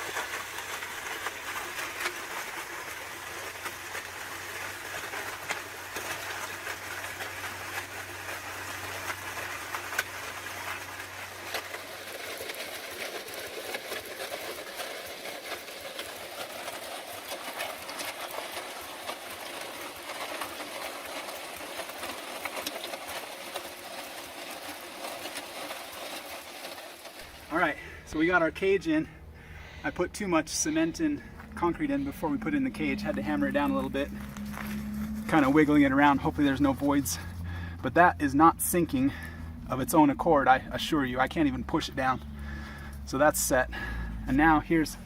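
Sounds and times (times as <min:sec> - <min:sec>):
concrete scraping and rattling: 0:00.0 - 0:28.1, 0:30.6 - 0:37.5
motor hum: 0:00.0 - 0:29.9, 0:30.6 - 0:37.9, 0:42.0 - 0:45.0.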